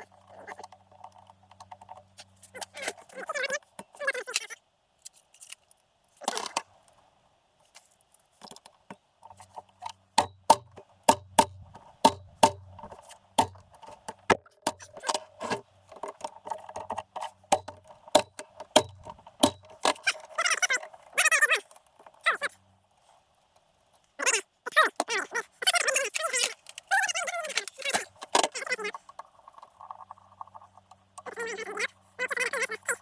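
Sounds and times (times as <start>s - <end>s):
metallic clicks of tools and parts: 7.7s - 20.9s.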